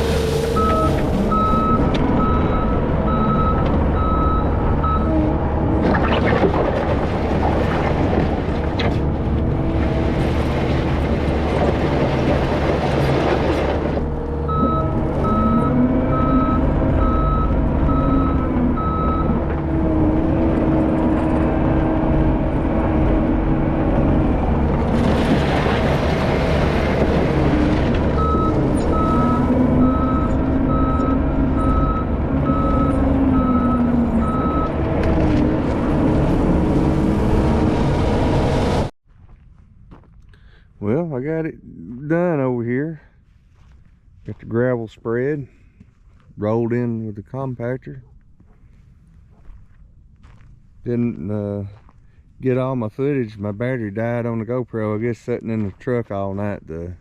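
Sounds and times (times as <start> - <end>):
bulldozer diesel engine: 0.0 - 39.0
bulldozer track noise: 0.0 - 57.0
reversing alarm beeping: 0.6 - 5.1, 14.5 - 19.4, 28.2 - 34.8.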